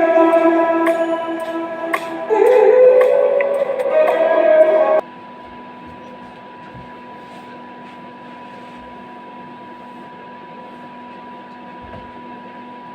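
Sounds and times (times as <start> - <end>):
electric fan running: 0.0 - 12.9.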